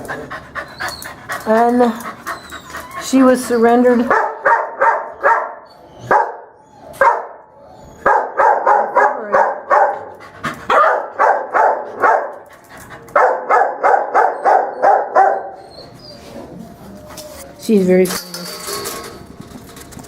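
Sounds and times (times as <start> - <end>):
dog barking: 4.1 - 7.4, 8.0 - 10.1, 10.7 - 12.4, 13.2 - 15.6.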